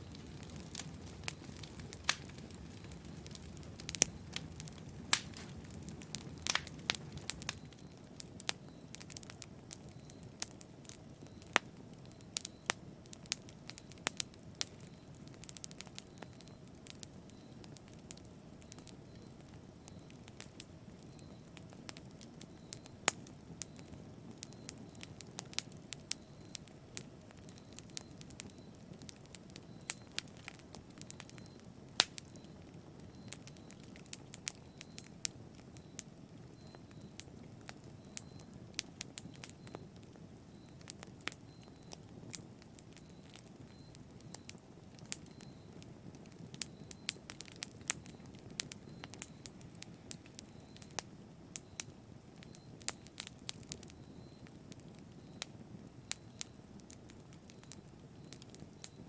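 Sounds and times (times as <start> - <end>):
low rumble of burning: 0.0 - 59.0
wood fire crackling and popping: 0.0 - 59.0.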